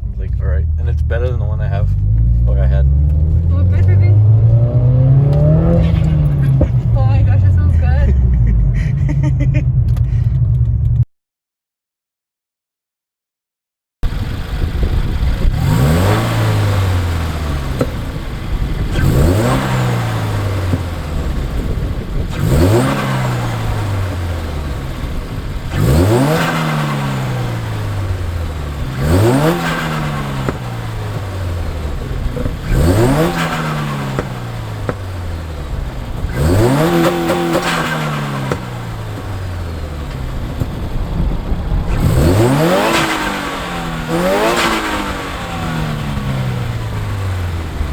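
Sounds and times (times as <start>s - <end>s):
car engine revving: 0.0s - 11.0s, 14.0s - 47.9s.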